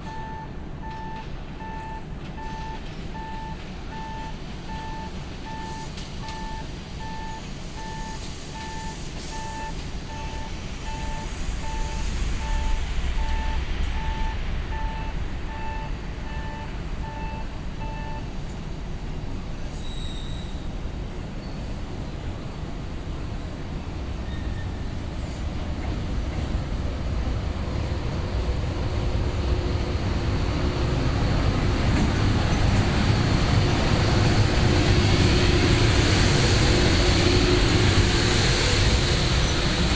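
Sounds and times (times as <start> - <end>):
station warning beeping: 0.0 - 18.6, 31.2 - 39.9
freight train rumble: 0.0 - 39.9.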